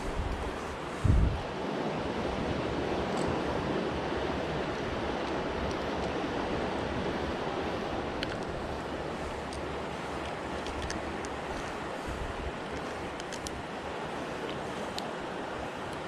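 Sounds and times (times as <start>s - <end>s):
floodwater rushing in a creek: 0.0s - 16.0s
faint ticks: 12.5s - 13.6s, 14.4s - 15.2s.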